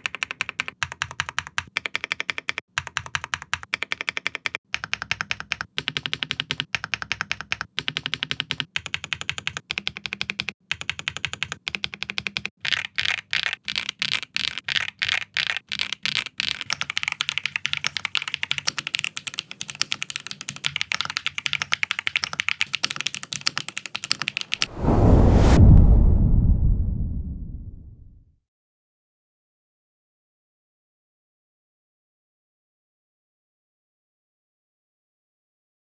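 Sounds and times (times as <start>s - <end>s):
mechanical keyboard typing: 0.0s - 24.6s
loud sound: 24.6s - 28.2s.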